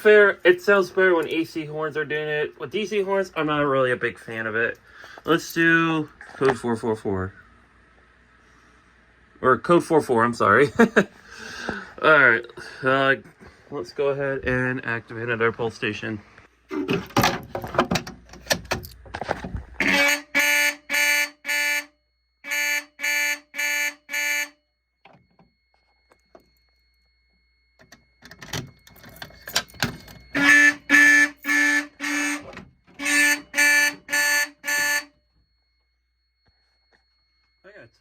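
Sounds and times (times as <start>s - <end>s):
fire alarm horn blasts: 19.8s - 38.0s.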